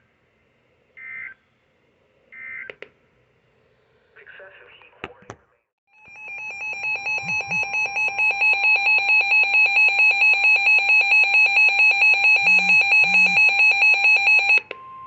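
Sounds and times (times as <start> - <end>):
buzzy electronic alarm beeps: 6.0 - 15.0.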